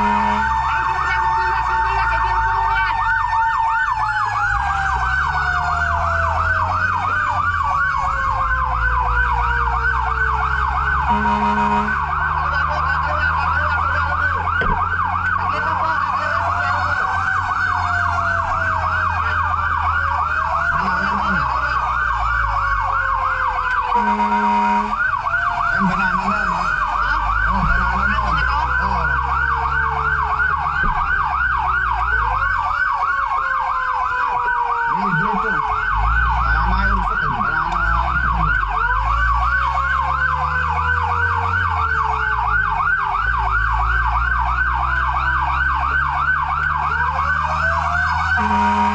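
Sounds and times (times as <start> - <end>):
short horn blasts: 0.0 - 0.6, 11.1 - 12.1, 24.0 - 25.0, 48.4 - 48.9
fire truck siren yelping: 0.0 - 48.9
siren falling in pitch: 0.0 - 48.9
truck engine running: 0.0 - 48.9.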